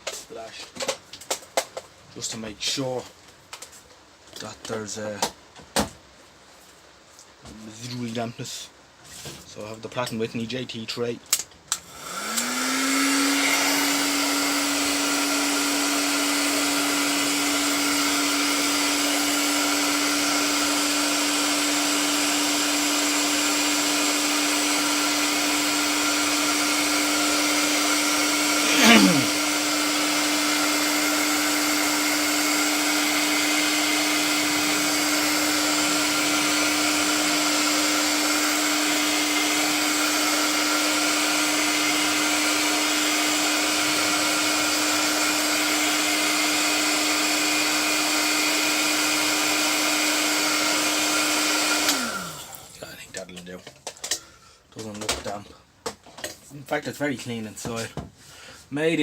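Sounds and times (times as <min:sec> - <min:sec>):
hairdryer running: 0:11.8 - 0:52.8.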